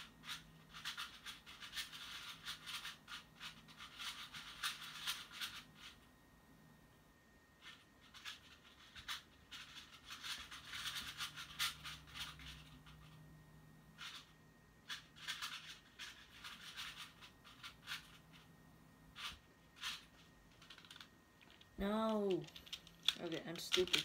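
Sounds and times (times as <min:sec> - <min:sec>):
speed cube clicking turns: 0:00.0 - 0:06.0, 0:08.1 - 0:12.7, 0:14.9 - 0:18.2, 0:19.2 - 0:24.0.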